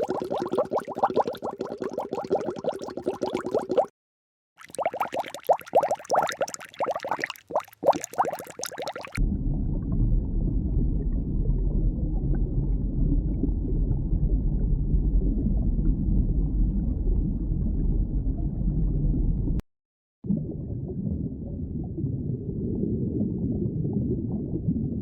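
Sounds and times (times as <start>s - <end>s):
muffled underwater rumble: 9.2s - 19.6s, 20.3s - 25.0s.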